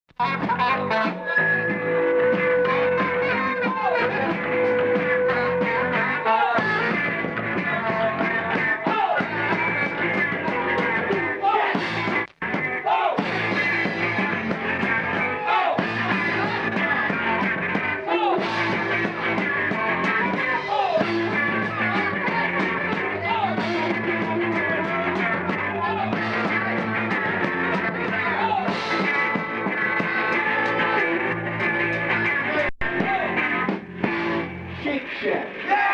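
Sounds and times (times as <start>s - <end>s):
rock band playing live: 0.2s - 35.7s
person singing: 19.7s - 28.7s.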